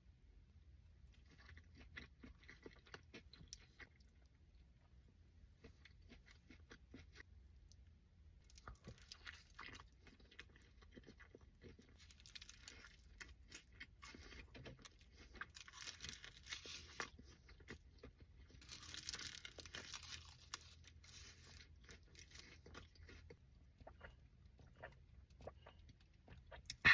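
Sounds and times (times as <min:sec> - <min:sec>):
person chewing food: 0:01.0 - 0:26.9.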